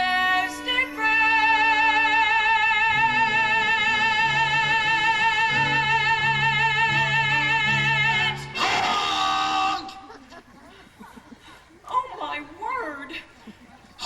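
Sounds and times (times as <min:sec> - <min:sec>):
musical accompaniment: 0:00.0 - 0:09.8.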